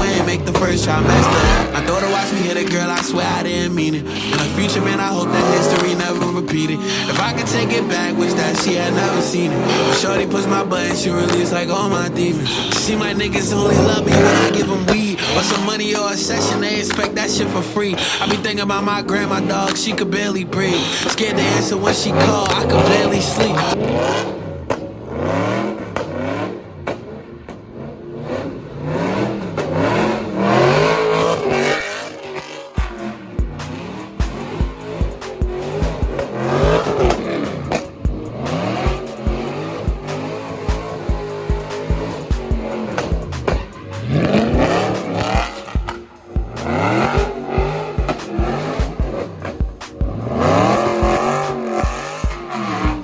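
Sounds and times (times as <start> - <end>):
deep thumps: 0.0 - 2.2
hip-hop beat with deep bass: 0.0 - 27.1, 28.9 - 53.0
car engine revving: 0.0 - 53.0.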